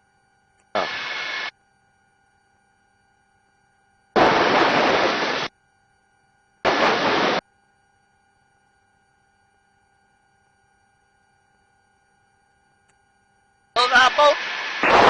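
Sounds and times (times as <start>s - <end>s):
faint steady hum: 0.0s - 15.0s
intercom noise rush: 0.8s - 1.5s, 13.8s - 15.0s.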